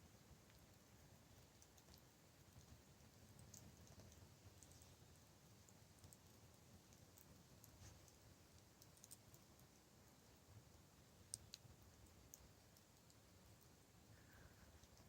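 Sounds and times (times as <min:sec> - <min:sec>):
campfire crackling and popping: 0:00.1 - 0:09.8.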